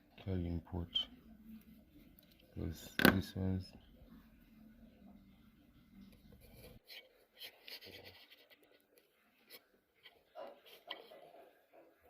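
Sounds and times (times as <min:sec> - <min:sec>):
faint scratching: 0:01.0 - 0:12.0.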